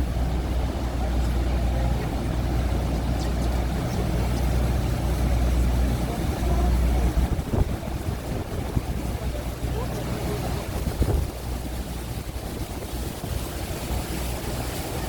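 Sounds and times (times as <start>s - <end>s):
boat engine rumbling: 0.0s - 15.0s
water noise: 0.0s - 15.0s
wind: 0.0s - 15.0s.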